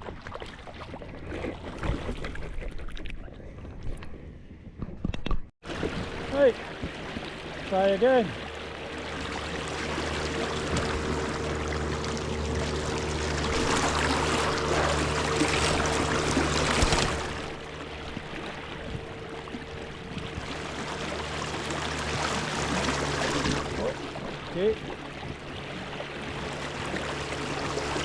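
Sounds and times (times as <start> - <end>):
river water running and splashing: 5.6 - 28.0
steady low hum: 5.7 - 28.0.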